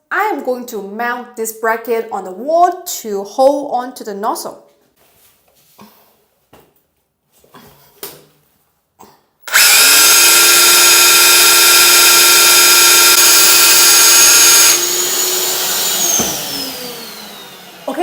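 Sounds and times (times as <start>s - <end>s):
electric drill drilling into tile: 9.5s - 17.9s.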